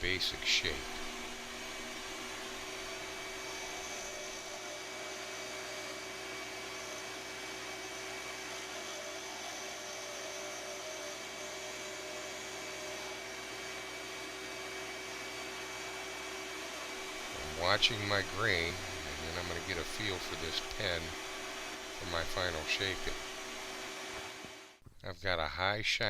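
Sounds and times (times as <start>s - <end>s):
wood lathe motor hum: 0.0s - 24.8s
thin high whine: 16.9s - 24.5s
turning tool hissing on wood: 16.9s - 24.7s.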